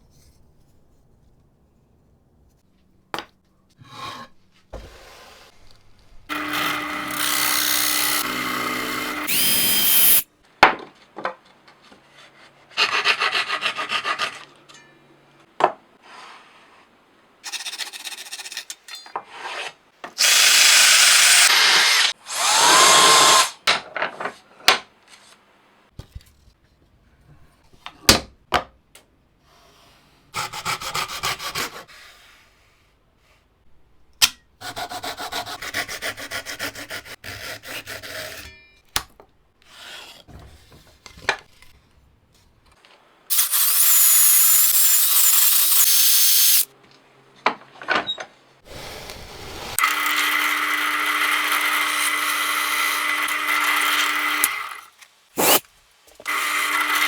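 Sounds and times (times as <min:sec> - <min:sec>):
power tool running on wood: 0:06.3 - 0:10.2, 0:20.2 - 0:23.6, 0:43.3 - 0:46.7, 0:49.8 - 0:54.8, 0:55.4 - 0:55.6, 0:56.3 - 0:57.0
rasping or sanding strokes: 0:55.4 - 0:55.6.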